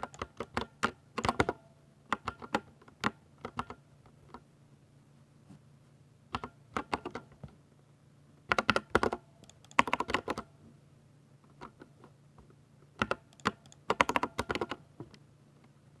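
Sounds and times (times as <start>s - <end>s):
mechanical keyboard typing: 0.0s - 3.8s, 6.4s - 7.3s, 8.5s - 10.5s, 13.0s - 14.8s.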